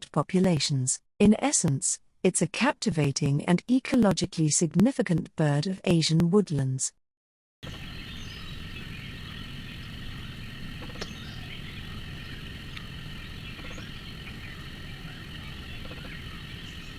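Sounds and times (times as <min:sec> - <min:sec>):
faint clicks: 0:07.6 - 0:16.9
insects buzzing: 0:07.6 - 0:16.9
low rumble: 0:07.6 - 0:16.9.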